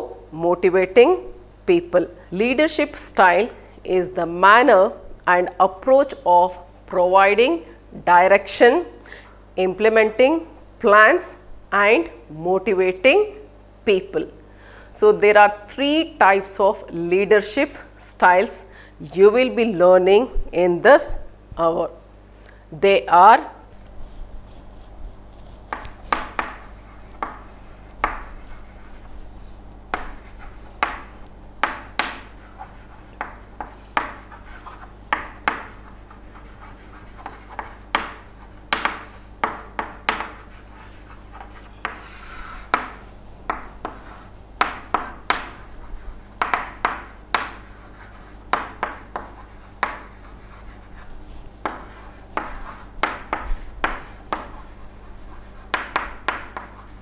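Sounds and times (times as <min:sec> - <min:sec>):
pen scratching while writing: 0:25.7 - 0:38.5.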